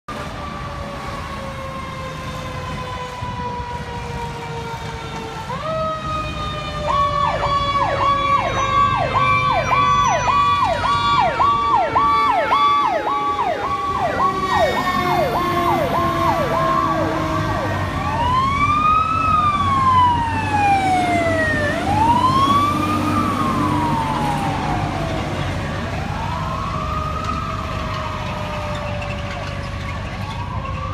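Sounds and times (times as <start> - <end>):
high-low siren wail: 0.1 - 30.9
truck engine rumbling: 0.1 - 30.9
mechanical siren winding down: 6.8 - 25.2.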